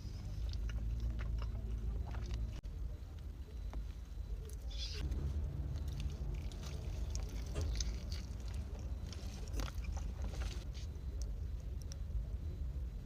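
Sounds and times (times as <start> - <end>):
person chewing food: 0.0 - 2.7, 4.5 - 12.0
low hum: 0.0 - 13.0.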